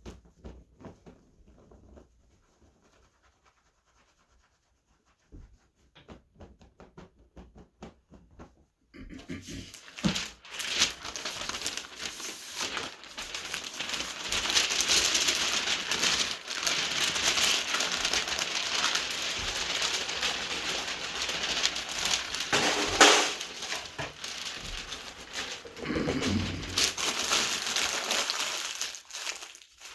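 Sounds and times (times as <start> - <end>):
crinkling and crackling: 9.0 - 29.9.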